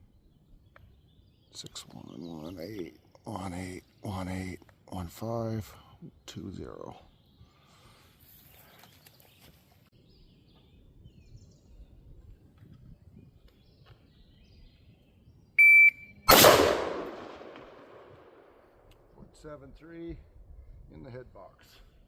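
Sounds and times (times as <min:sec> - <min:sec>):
shot timer beep: 0:15.6 - 0:16.3
gunshot echoing: 0:16.3 - 0:18.6.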